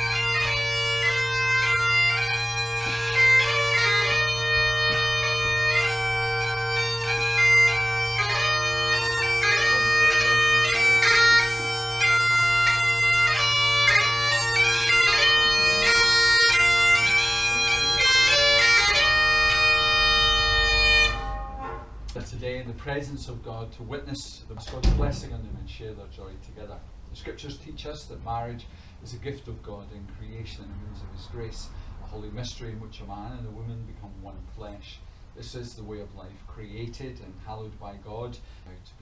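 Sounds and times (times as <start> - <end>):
bagpipes playing: 0.0 - 22.1.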